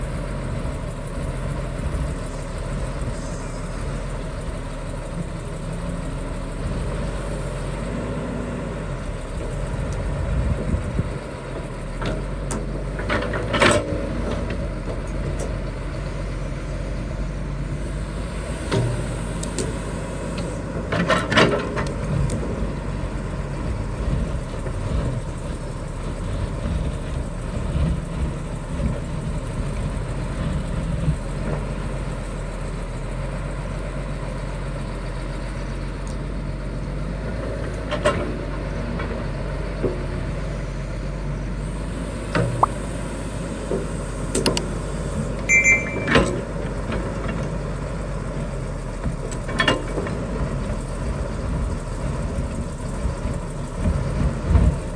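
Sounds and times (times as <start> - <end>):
excavator diesel engine running: 0.0 - 54.9
high beeps: 42.5 - 43.0, 45.5 - 46.4.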